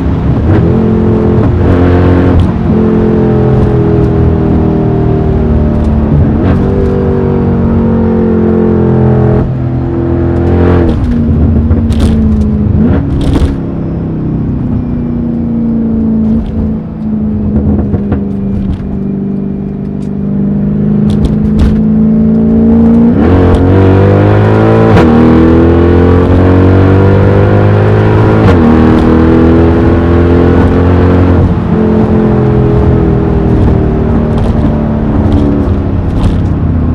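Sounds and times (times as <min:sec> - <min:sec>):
car engine revving through gears: 0:00.0 - 0:36.9
exhaust cracks: 0:10.3 - 0:13.6, 0:21.0 - 0:21.8, 0:32.8 - 0:36.9.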